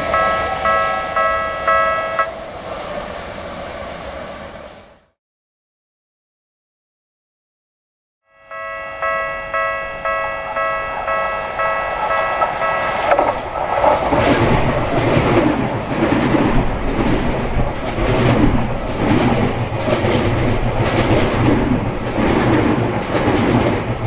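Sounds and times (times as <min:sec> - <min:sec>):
level crossing warning bell: 0:00.0 - 0:02.4, 0:08.3 - 0:13.6
train wheels clattering over rail joints: 0:11.6 - 0:24.0.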